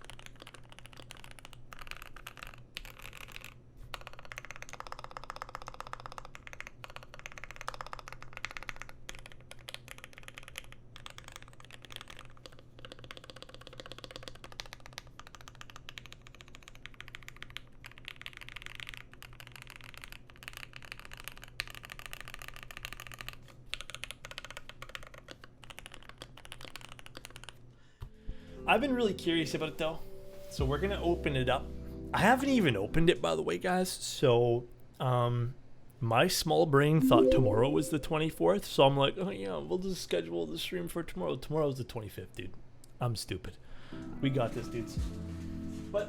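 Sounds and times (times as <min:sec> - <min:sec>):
mechanical keyboard clicking: 0:00.0 - 0:27.6.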